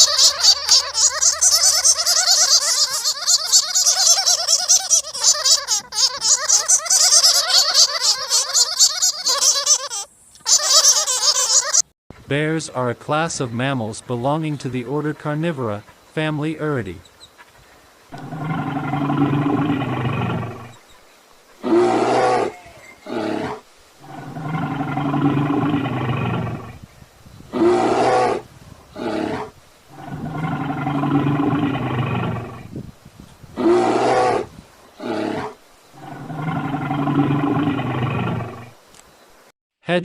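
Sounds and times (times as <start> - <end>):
bear calling: 0.0 - 11.8, 18.1 - 20.8, 21.6 - 26.8, 27.5 - 32.7, 33.6 - 38.8.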